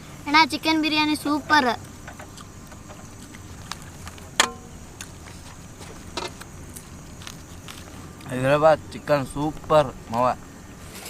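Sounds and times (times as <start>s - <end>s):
low background noise: 0.0s - 11.0s.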